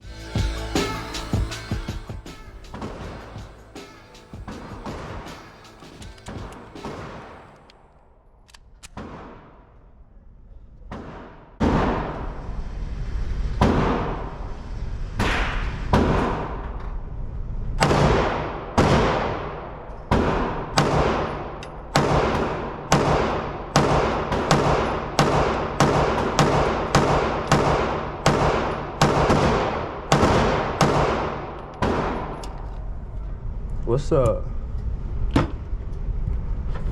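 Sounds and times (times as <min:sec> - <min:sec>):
gunshots echoing indoors: 0:06.2 - 0:12.6, 0:13.6 - 0:14.5, 0:15.2 - 0:17.1, 0:17.8 - 0:33.0.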